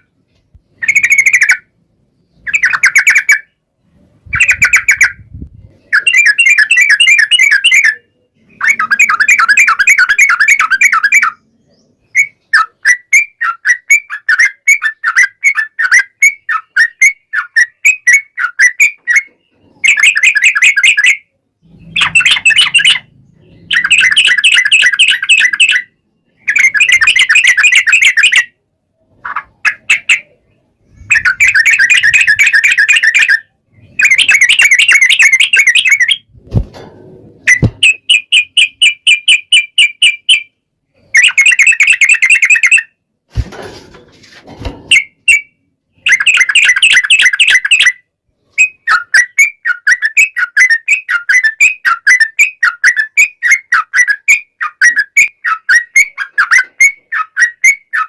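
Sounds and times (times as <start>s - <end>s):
bulbul chattering song: 0.7s - 3.6s, 4.2s - 36.4s, 37.4s - 43.0s, 44.9s - 48.0s.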